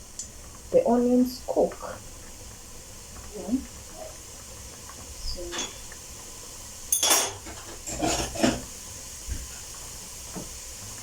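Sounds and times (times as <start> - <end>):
utensils clinking against dishes: 5.5 - 5.8, 6.9 - 8.7.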